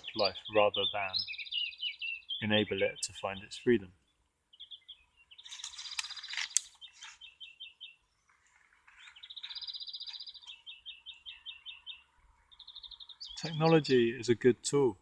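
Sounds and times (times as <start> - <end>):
songbirds chirping and trilling: 0.0 - 15.0.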